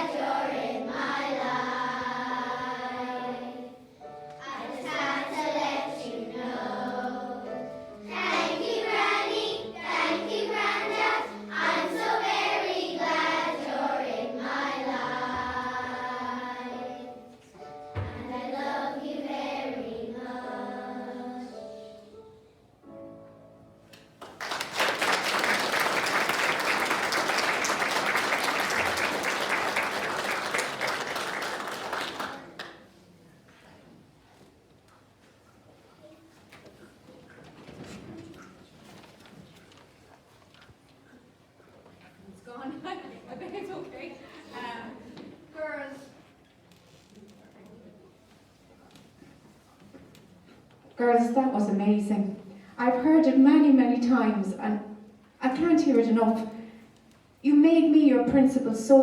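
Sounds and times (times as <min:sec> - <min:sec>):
girls choir singing: 0:00.0 - 0:22.0, 0:24.6 - 0:32.7
audience applauding: 0:24.2 - 0:32.8.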